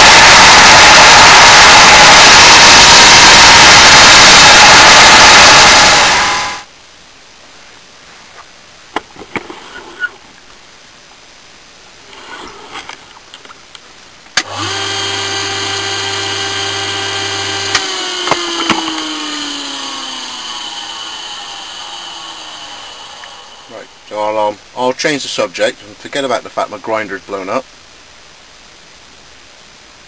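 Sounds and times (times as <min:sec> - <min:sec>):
electric motor humming: 0:14.5 - 0:23.7.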